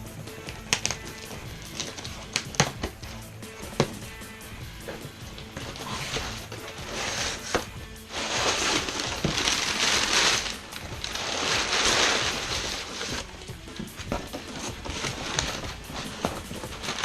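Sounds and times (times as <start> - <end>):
soft background music: 0.0 - 17.0
cardboard box scraping and rustling: 4.8 - 13.4, 14.1 - 17.0.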